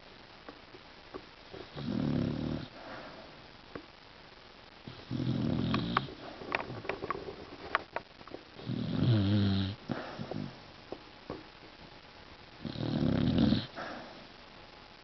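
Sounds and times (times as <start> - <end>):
dog snoring: 1.7 - 2.9, 4.8 - 6.4, 8.6 - 10.6, 12.6 - 14.1.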